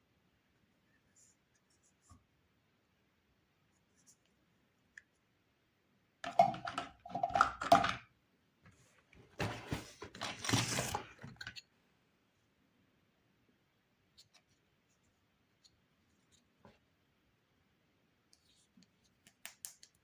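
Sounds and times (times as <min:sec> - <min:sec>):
packaging crinkling: 0:09.5 - 0:11.2.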